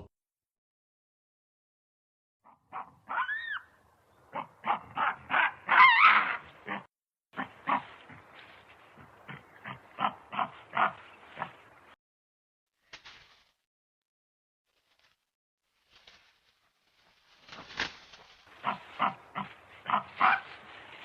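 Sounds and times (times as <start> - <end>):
primate grunts and barks: 4.3 - 11.7, 18.5 - 20.7.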